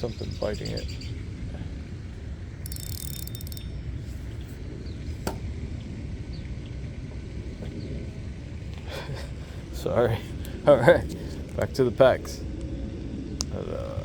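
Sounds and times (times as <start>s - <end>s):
fishing reel ratchet clicking: 2.6s - 3.8s
low rumble: 3.6s - 14.0s.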